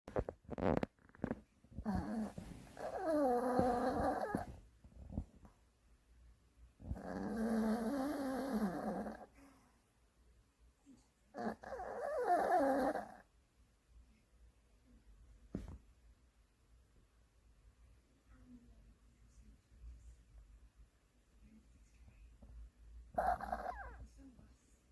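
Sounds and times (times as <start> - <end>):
dog snoring: 1.8 - 5.3, 6.8 - 9.6, 11.4 - 13.2, 23.1 - 24.1.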